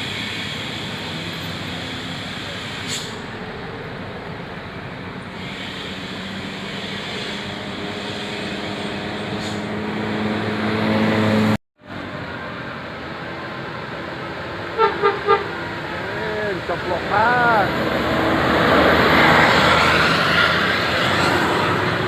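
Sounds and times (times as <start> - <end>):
bus engine drone: 0.0 - 22.0
road traffic noise: 0.0 - 22.0.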